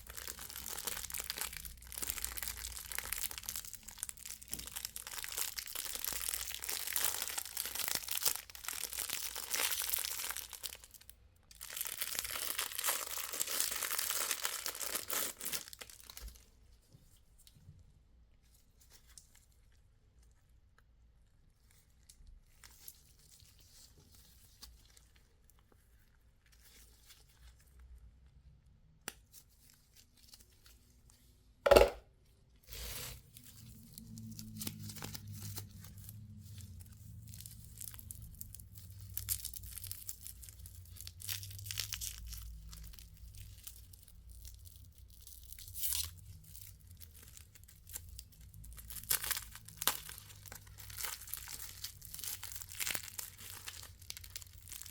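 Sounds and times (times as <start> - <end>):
candy wrappers crinkling: 0.0 - 16.6, 32.7 - 54.9.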